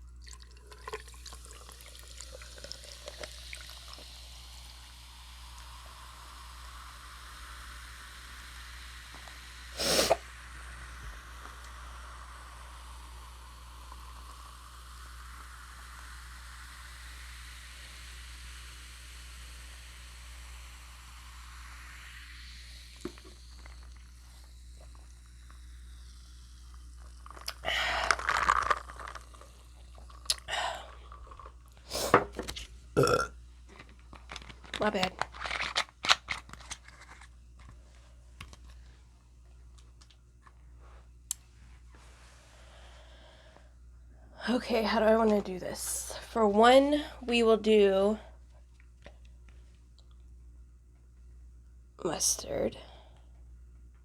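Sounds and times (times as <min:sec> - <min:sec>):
drink pouring into cup: 0:00.0 - 0:17.2, 0:20.4 - 0:37.3.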